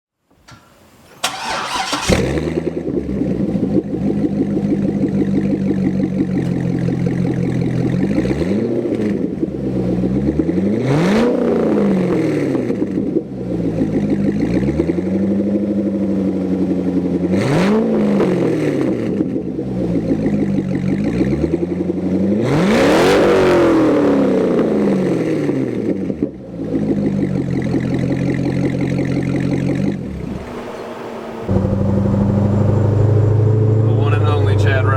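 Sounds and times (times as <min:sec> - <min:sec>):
starter motor whirring: 0:01.2 - 0:02.4
engine throttle blips: 0:01.2 - 0:10.4, 0:26.6 - 0:34.9
loud lumpy engine idling: 0:31.5 - 0:34.9.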